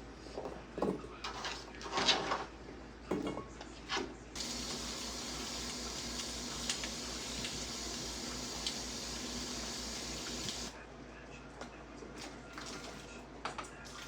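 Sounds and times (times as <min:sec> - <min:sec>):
tap running into sink: 0:04.4 - 0:10.7.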